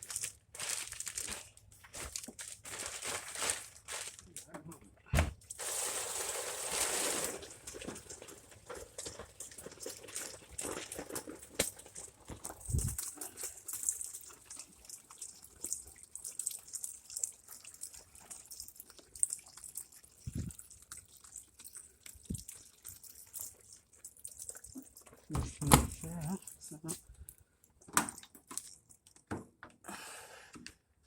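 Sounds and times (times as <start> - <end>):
water running into washer: 5.2 - 8.6.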